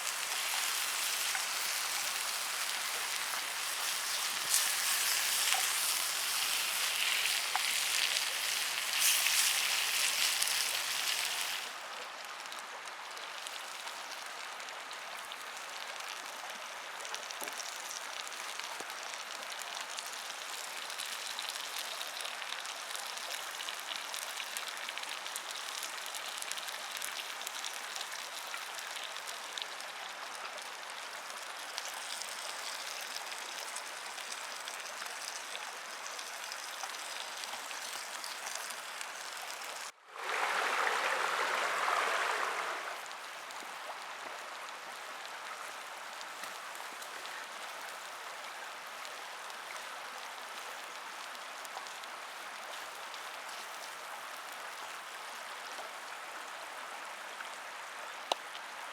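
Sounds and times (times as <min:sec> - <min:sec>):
food sizzling in a pan: 0:00.0 - 0:11.8, 0:31.1 - 0:39.9.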